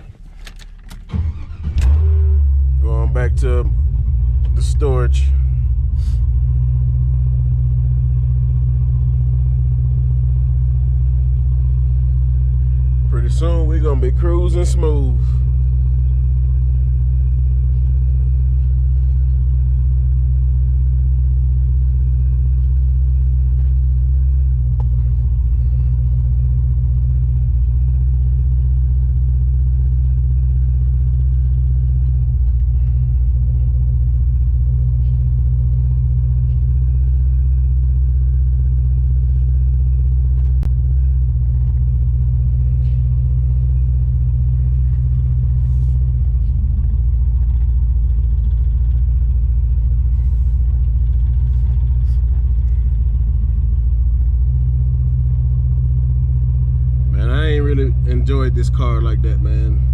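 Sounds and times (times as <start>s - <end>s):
car engine rumbling: 0.0s - 59.9s.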